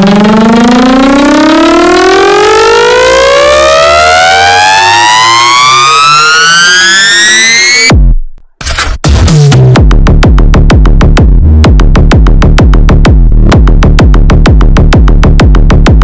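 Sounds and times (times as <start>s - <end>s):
rising synth tone: 0.0s - 8.0s
faint electronic beat: 7.9s - 16.0s.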